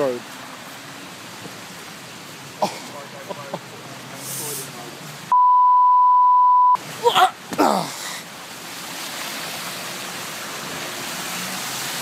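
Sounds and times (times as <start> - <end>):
rushing flood water: 0.0 - 5.3, 6.8 - 12.0
person exclaiming: 7.0 - 8.2.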